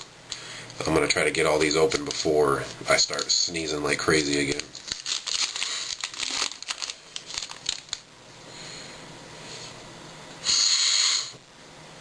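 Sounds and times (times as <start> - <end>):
wrapper crinkling: 4.2 - 8.1.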